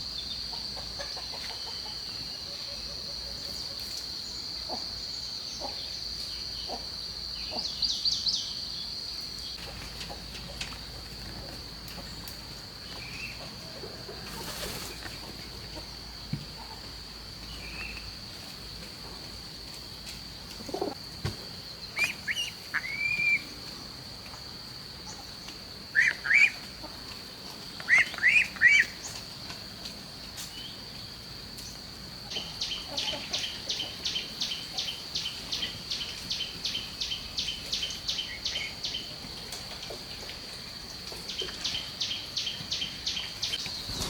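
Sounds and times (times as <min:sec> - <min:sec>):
high insect drone: 0:41.7 - 0:44.0.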